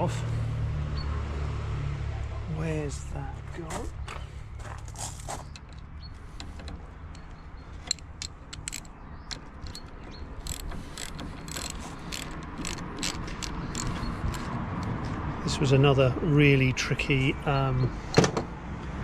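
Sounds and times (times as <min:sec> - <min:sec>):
ratchet clicking: 0:05.6 - 0:15.0.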